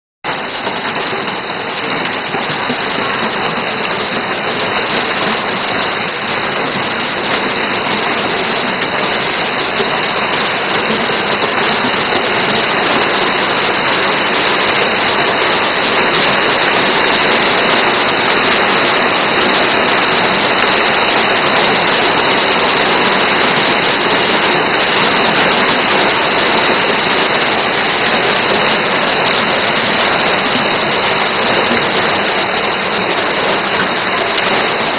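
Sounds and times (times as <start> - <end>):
hail and heavy rain: 0.3 - 34.9.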